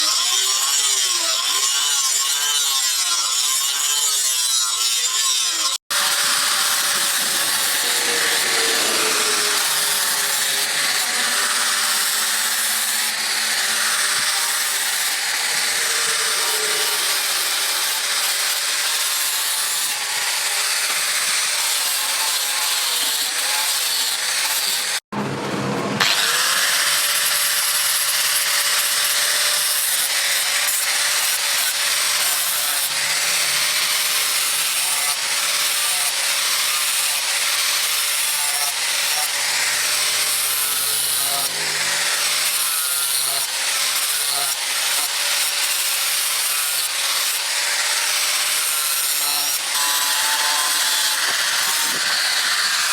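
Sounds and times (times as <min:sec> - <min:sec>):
power tool rasping: 0:00.0 - 0:25.0, 0:26.0 - 0:52.9.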